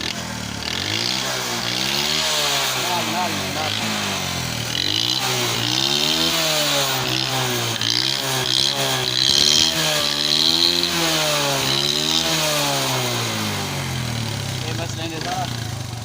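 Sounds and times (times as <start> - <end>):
motorcycle engine revving: 0.0 - 16.0.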